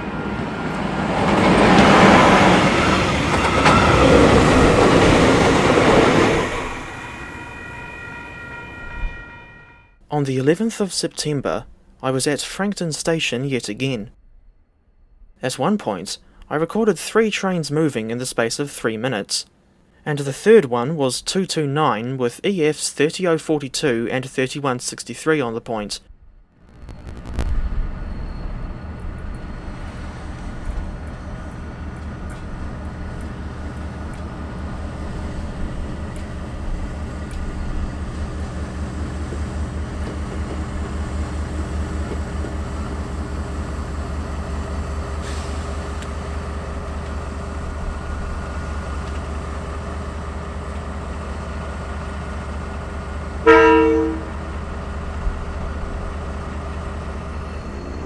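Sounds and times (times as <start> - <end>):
freight train rumbling past: 0.0 - 9.8, 26.7 - 58.0
locomotive horn blast: 6.2 - 9.9, 53.4 - 54.7.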